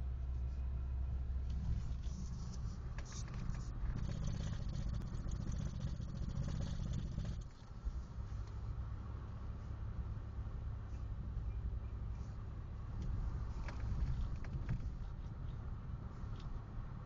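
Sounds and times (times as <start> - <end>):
road noise: 0.0 - 17.0
car engine running: 1.0 - 8.5.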